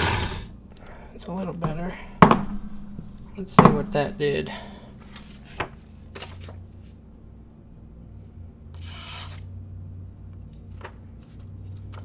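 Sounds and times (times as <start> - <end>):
knife slicing paper: 8.8 - 9.4.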